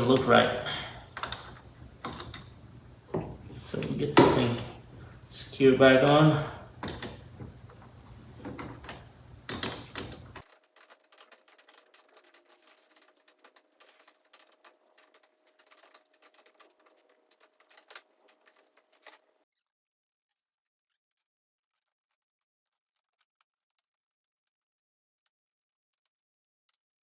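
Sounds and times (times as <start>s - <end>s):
knocks: 4.2s - 4.7s
faint rapid irregular clicking: 8.5s - 19.2s.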